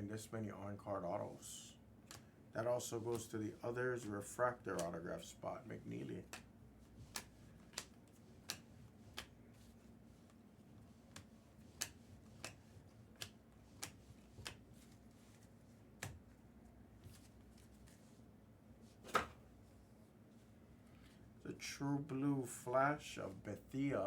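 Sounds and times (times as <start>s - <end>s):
trading cards flipped clicking: 2.0s - 2.3s, 6.2s - 6.5s, 7.1s - 9.4s, 11.0s - 15.0s.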